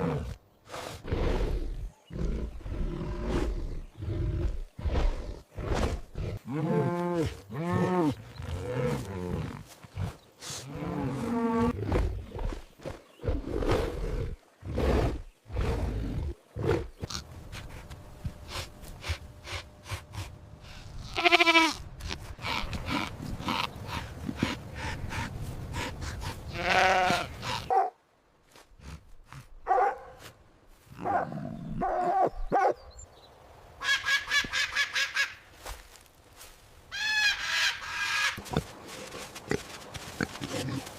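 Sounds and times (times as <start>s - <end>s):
animal bleating: 21.0s - 23.7s, 26.5s - 27.6s.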